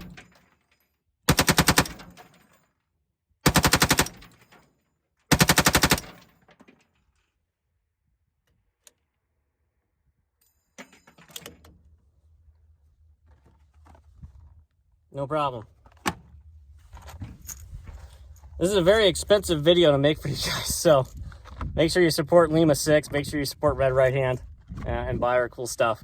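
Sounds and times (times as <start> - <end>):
rifle firing rapid bursts: 1.3 - 2.1, 3.4 - 4.3, 5.3 - 6.2
quiet metallic clatter: 10.4 - 11.8.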